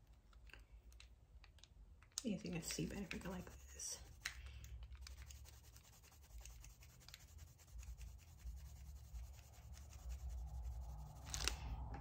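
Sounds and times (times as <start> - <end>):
pencil scratching on paper: 2.6 - 4.3, 5.0 - 11.3.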